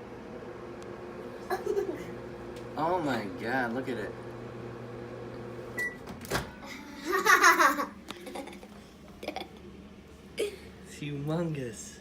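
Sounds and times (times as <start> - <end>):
microwave oven humming: 0.0 - 12.0
microwave beep: 5.7 - 6.1.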